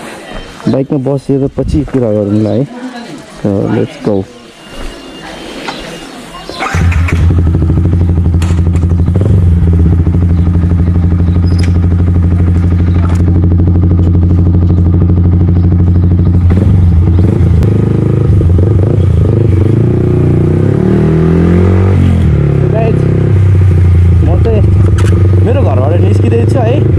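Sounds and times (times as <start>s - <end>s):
motorcycle engine idling and revving: 6.6s - 26.9s.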